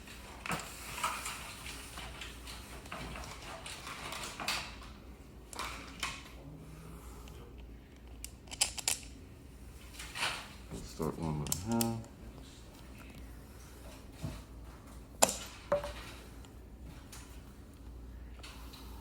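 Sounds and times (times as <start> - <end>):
metal parts clicking and scraping: 8.0 - 9.1.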